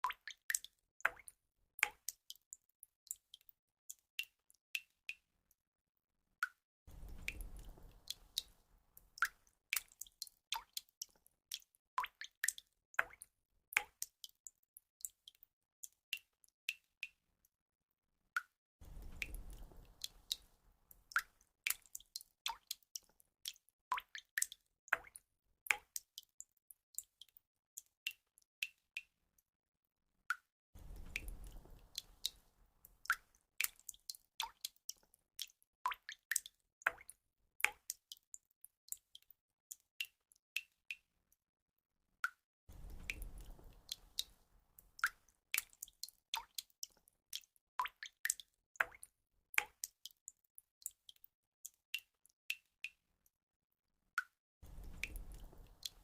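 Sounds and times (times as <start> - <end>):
water drops dripping: 0.0 - 5.3, 6.4 - 17.2, 18.4 - 29.1, 30.3 - 41.1, 42.2 - 53.0, 54.2 - 56.0.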